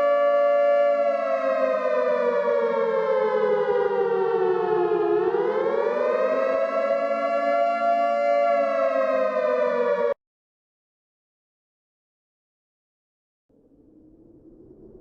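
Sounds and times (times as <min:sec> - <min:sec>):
civil defense siren: 0:00.0 - 0:10.2.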